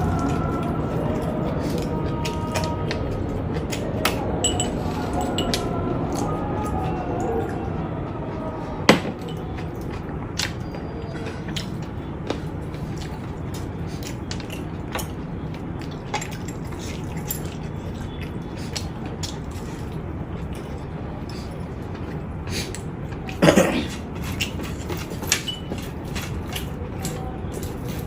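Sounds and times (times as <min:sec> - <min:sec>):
chewing: 0:00.0 - 0:28.0
tableware clinking: 0:04.4 - 0:05.6.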